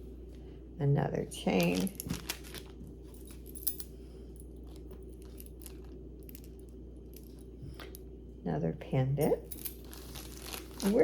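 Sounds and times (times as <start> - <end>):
low steady hum: 0.0 - 11.0
jewelry clicking and clinking: 1.6 - 8.0, 9.2 - 11.0.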